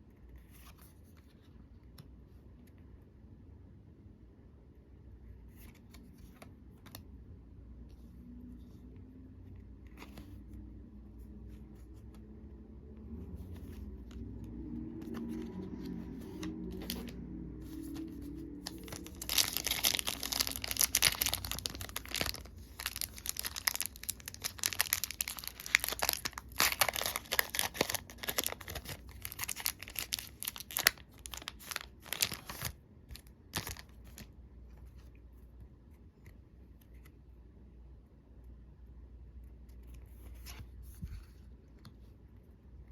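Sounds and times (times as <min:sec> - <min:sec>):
foil wrapper tearing and crinkling: 0:18.6 - 0:32.7, 0:33.6 - 0:33.9.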